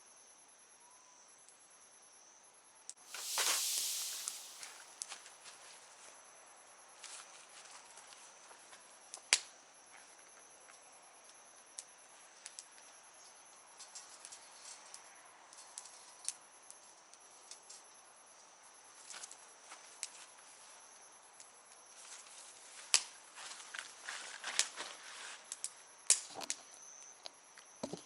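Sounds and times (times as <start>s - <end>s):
high-pitched insect trill: 0.0s - 5.2s
sharp loud crack: 3.1s - 5.0s
campfire crackling and popping: 3.1s - 5.1s.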